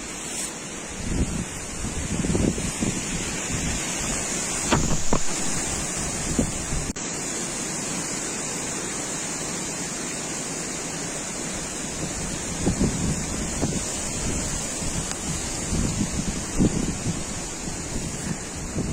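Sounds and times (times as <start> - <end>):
strong wind buffeting microphone: 0.9 - 7.0, 11.9 - 18.9.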